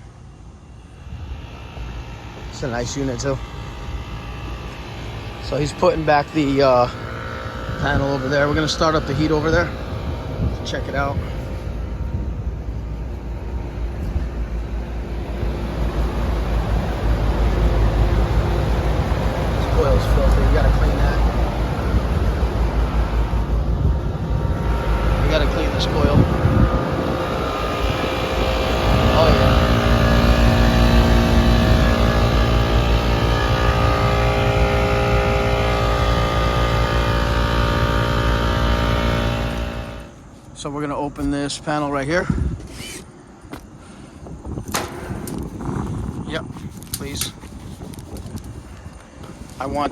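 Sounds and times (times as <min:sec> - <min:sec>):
faint steady hum: 0:00.0 - 0:49.9
hvac unit low rumble: 0:00.0 - 0:49.9
wind on microphone: 0:03.4 - 0:37.7, 0:42.1 - 0:49.9.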